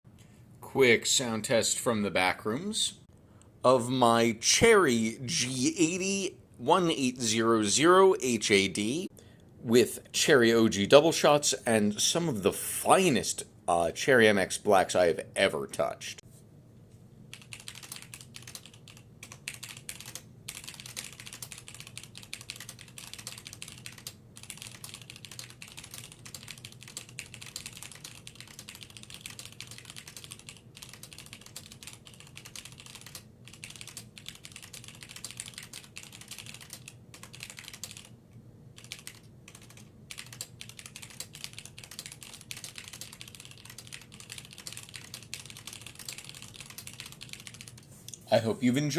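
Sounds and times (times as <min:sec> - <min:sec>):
mechanical keyboard typing: 0:17.3 - 0:38.1, 0:38.8 - 0:47.8.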